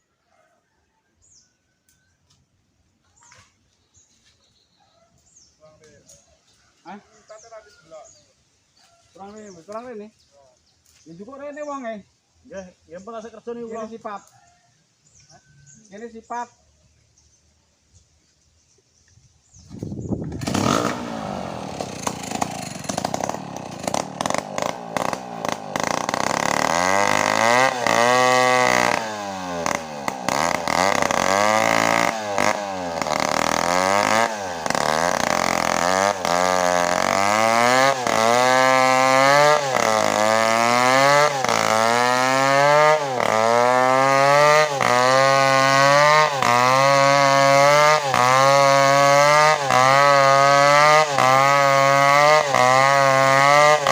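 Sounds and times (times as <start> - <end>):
chainsaw revving: 20.2 - 53.9.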